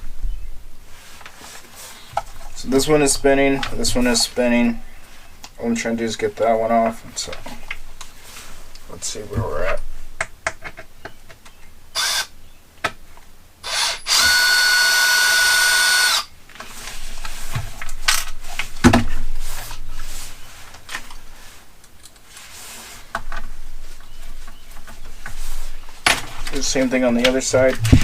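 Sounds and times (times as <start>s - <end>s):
power driver running: 13.7s - 16.3s.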